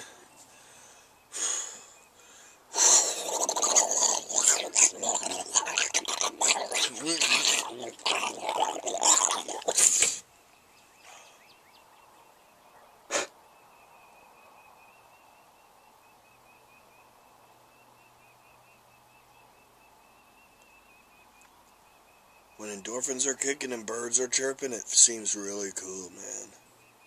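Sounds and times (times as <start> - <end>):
faint high chirping: 0.0 - 3.6, 10.2 - 24.1
harsh breaths and snorts: 0.0 - 10.2, 13.1 - 13.4.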